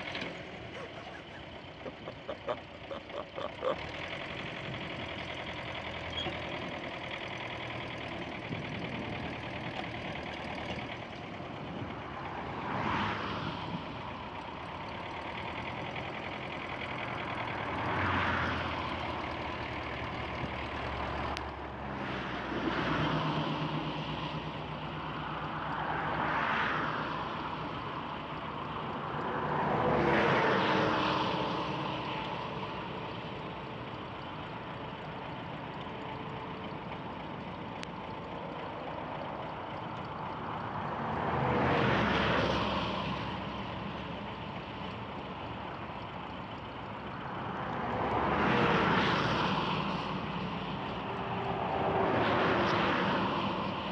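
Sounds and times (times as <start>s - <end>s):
steady traffic rumble: 0.0s - 53.9s
vehicles passing: 0.0s - 53.9s.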